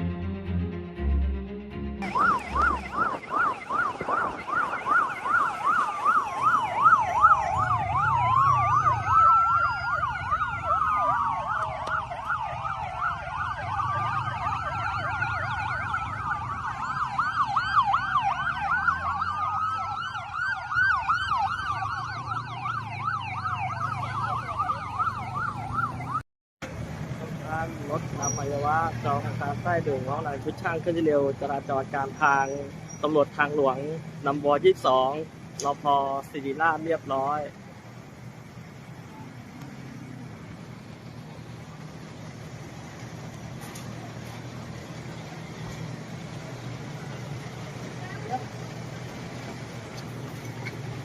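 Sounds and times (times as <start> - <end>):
dramatic music: 0.0 - 3.2
police sirens yelping: 2.0 - 26.2, 27.4 - 51.0
sirens wailing: 2.0 - 26.2, 27.3 - 51.0.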